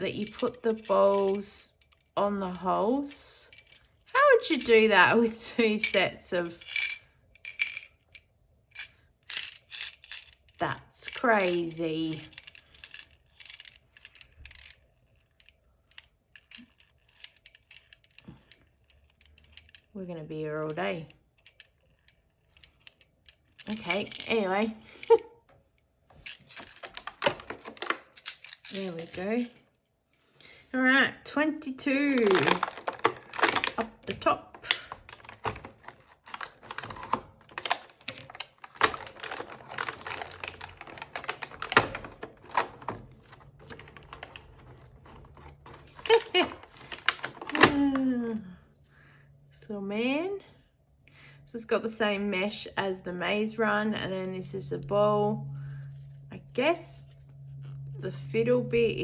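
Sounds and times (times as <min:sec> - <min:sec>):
small balls clicking in plastic toy: 0:32.0 - 0:36.8
packaging crackles and clicks: 0:32.1 - 0:48.0.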